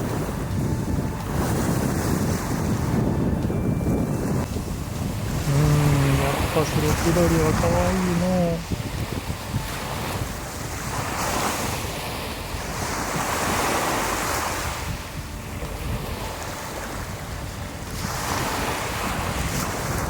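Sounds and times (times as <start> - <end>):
wind buffeting microphone: 0.0 - 20.0
surf breaking on beach: 4.6 - 20.0.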